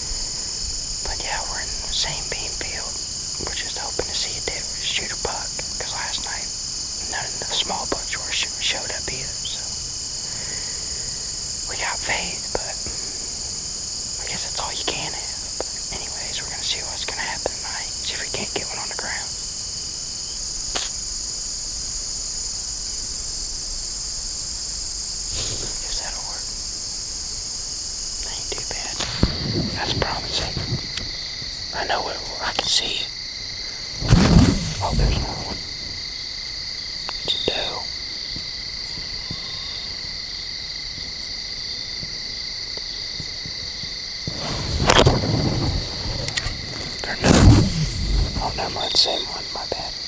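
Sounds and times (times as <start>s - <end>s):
crickets and insects chirping: 0.0s - 50.0s
soft rustle: 28.3s - 32.0s, 33.6s - 36.1s, 44.2s - 49.7s.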